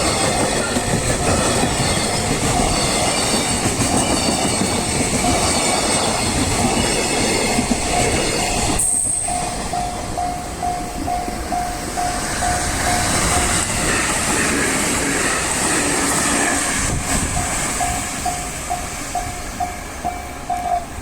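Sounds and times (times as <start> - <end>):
crossing warning bell ringing: 0.0 - 14.0, 16.9 - 21.0
train wheels running: 0.0 - 21.0.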